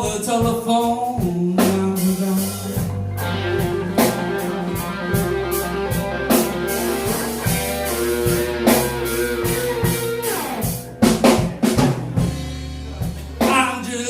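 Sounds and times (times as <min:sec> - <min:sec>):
drums and bass: 0:00.0 - 0:14.0
electric guitar fill: 0:02.7 - 0:11.5
person singing: 0:13.4 - 0:14.0.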